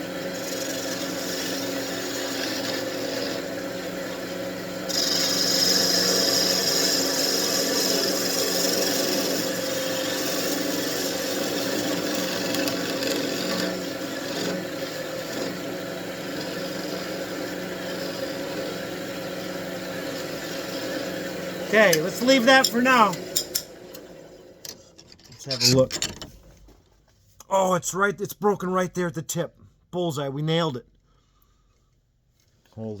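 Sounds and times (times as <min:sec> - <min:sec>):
tool hissing against spinning wood: 0:00.0 - 0:03.6, 0:04.8 - 0:23.5
wood lathe motor hum: 0:00.0 - 0:24.8.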